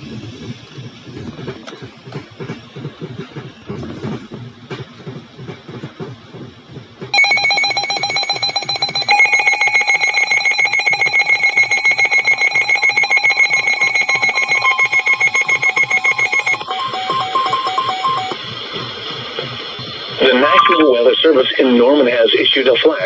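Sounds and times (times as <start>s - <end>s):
harsh electronic alarm: 7.2s - 18.4s, 20.2s - 21.0s.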